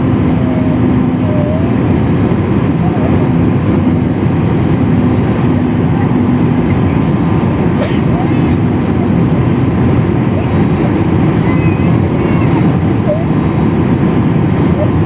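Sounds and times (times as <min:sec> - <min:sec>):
jet engine cabin rumble: 0:00.0 - 0:15.0.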